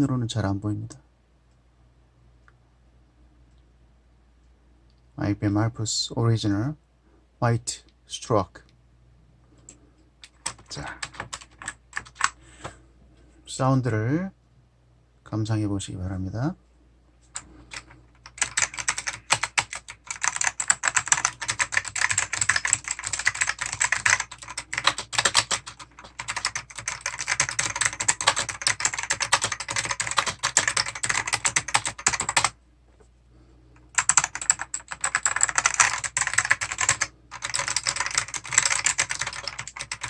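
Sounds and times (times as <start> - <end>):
clicky keyboard typing: 9.6 - 12.4, 17.3 - 32.6, 33.9 - 40.0.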